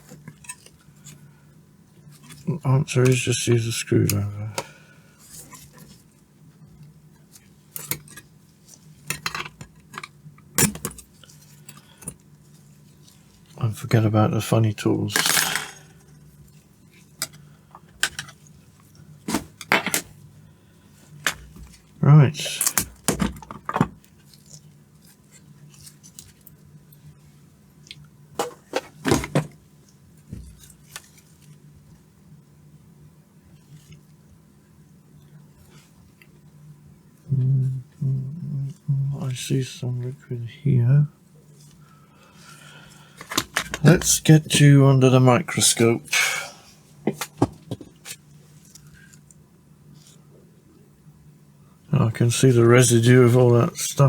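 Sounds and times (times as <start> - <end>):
steady low hum: 0.0 - 54.0
metal tools clinking: 15.1 - 15.9.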